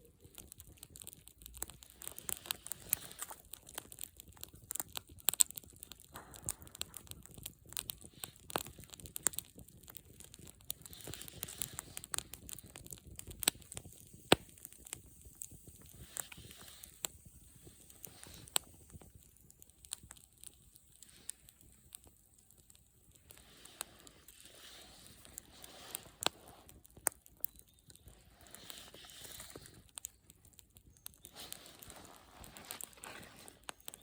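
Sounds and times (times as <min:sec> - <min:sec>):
campfire crackling: 0:00.0 - 0:34.0.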